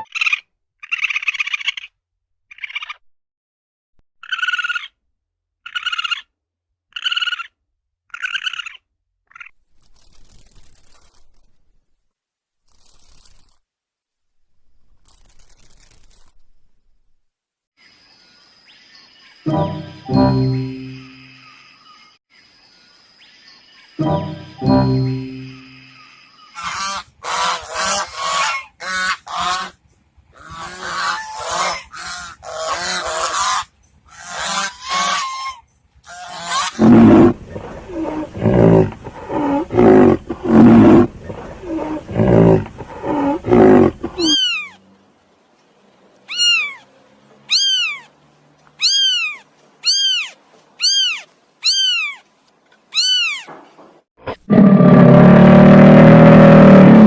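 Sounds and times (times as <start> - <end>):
deep animal calls: 36.1 - 44.7, 54.3 - 57.0.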